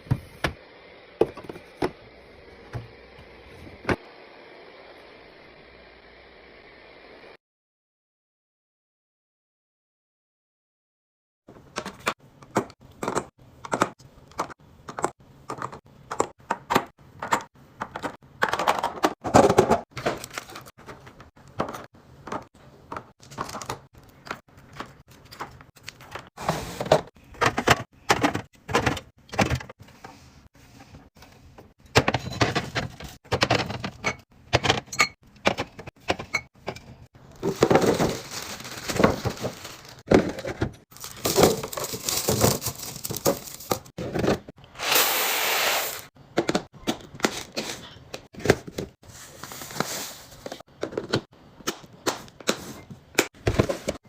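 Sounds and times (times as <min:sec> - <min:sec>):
groceries knocking and clinking: 0:11.5 - 0:30.1, 0:31.5 - 0:44.5, 0:46.2 - 0:49.0, 0:49.8 - 0:54.0
packaging crinkling: 0:37.4 - 0:40.0, 0:40.9 - 0:43.9.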